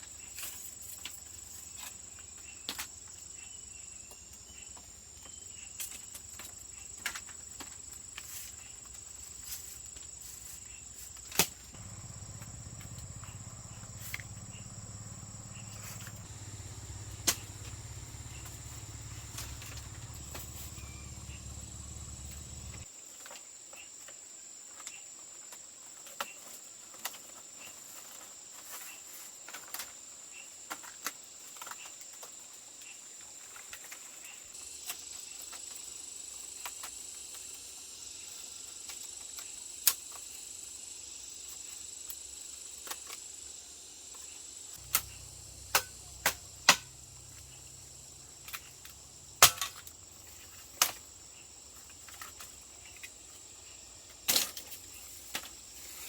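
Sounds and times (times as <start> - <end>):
high-pitched insect drone: 11.8 - 22.8.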